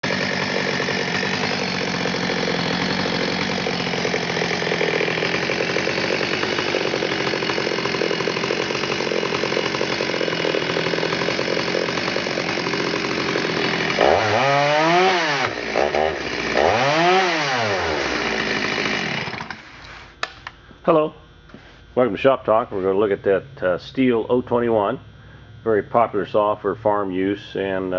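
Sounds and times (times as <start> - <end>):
chainsaw running and revving: 0.0 - 19.7.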